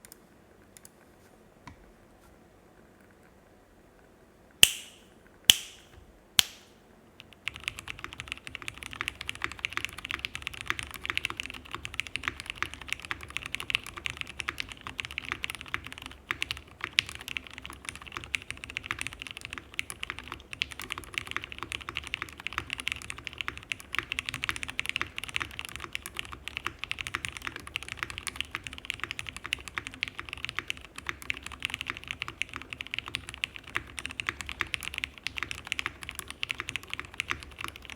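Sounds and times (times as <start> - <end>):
sharp clicks: 4.6 - 6.7
mechanical keyboard typing: 7.2 - 37.9.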